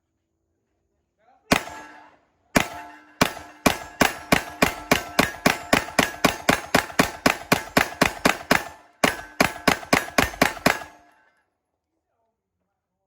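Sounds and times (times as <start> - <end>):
pistol firing rapid shots: 1.5 - 11.2.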